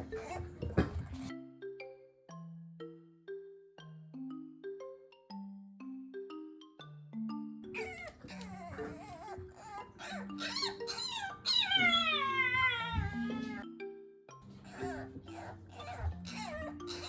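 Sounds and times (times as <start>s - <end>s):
puppy whining and crying: 0.0s - 1.3s, 7.8s - 13.7s, 14.5s - 17.0s
mallet percussion music: 0.0s - 17.0s.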